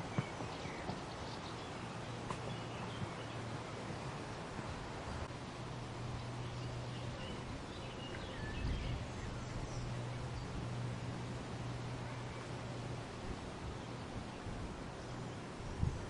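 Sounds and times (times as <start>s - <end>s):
steady low hum: 0.0s - 16.0s
wind rustling leaves: 0.0s - 16.0s.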